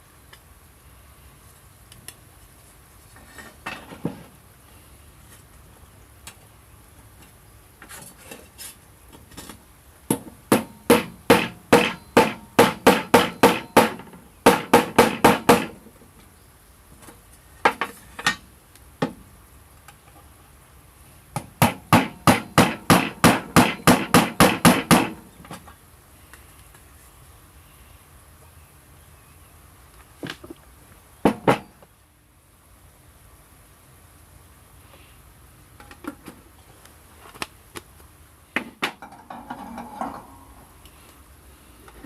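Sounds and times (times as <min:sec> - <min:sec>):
sharp striking blows: 0:10.5 - 0:15.8.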